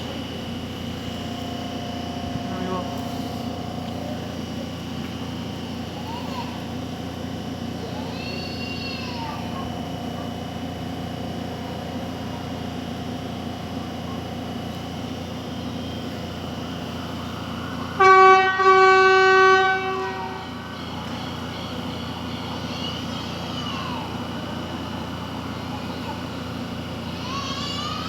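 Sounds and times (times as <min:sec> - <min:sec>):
train line noise: 0:00.0 - 0:28.0
train horn blasts: 0:18.0 - 0:20.6.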